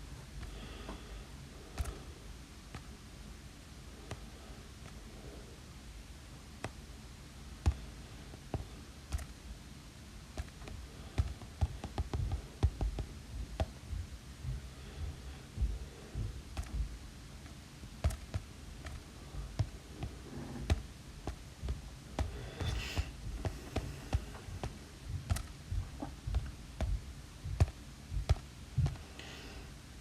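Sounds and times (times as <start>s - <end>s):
light low thumps: 10.3s - 29.2s.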